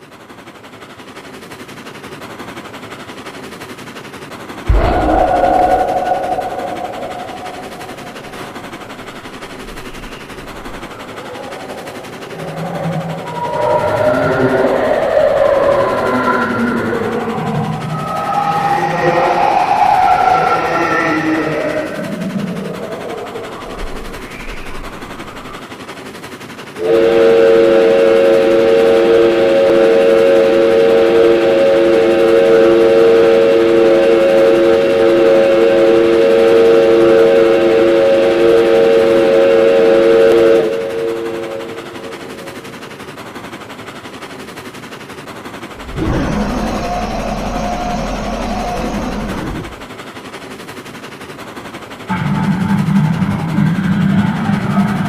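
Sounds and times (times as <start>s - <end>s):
fast even pulsing noise: 0.0s - 55.0s
low noisy rumble: 3.2s - 55.0s
deep rumbling blast with bending tones: 4.7s - 20.7s
multi-note train horn chord: 4.7s - 24.3s, 26.8s - 42.4s
held tone: 4.7s - 25.6s.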